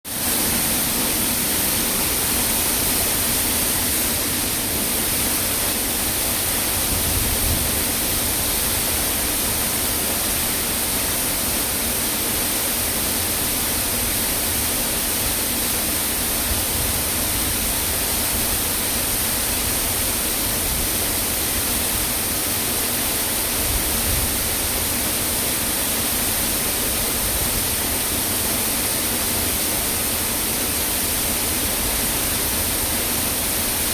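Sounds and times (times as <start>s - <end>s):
waterfall rushing: 0.1s - 33.9s.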